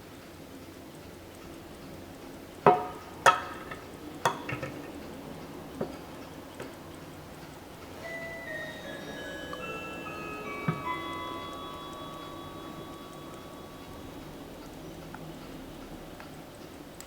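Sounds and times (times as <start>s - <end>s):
alarm clock clicks and knocks: 0.7s - 16.6s
music with held notes: 4.8s - 16.8s.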